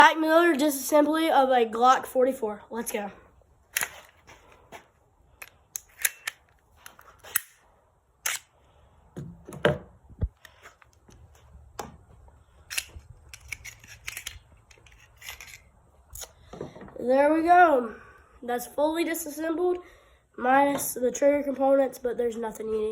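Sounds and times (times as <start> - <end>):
pistol parts clicking and snapping: 3.7 - 4.1, 5.4 - 7.6, 8.2 - 8.5, 12.6 - 16.4.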